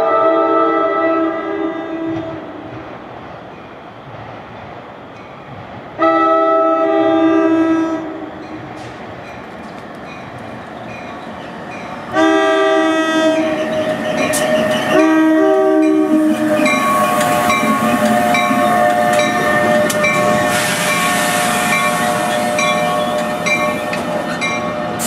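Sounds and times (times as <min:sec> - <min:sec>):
train air horn blasts: 0:00.0 - 0:02.5, 0:06.0 - 0:08.2, 0:12.1 - 0:13.6, 0:14.2 - 0:25.0
train rumbling on rails: 0:00.0 - 0:25.0.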